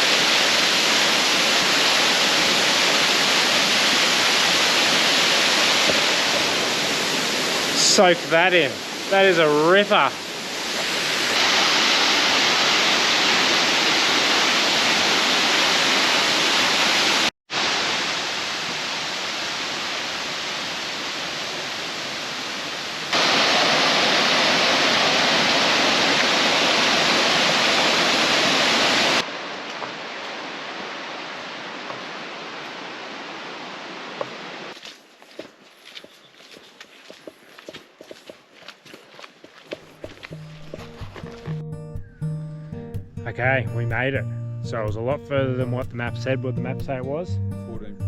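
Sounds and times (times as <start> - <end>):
waterfall rushing: 0.0 - 34.8.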